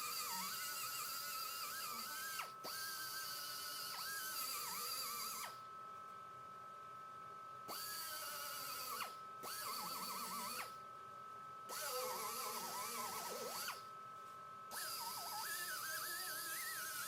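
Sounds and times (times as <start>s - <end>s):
power sander whining on metal: 11.7s - 13.8s, 14.7s - 17.0s.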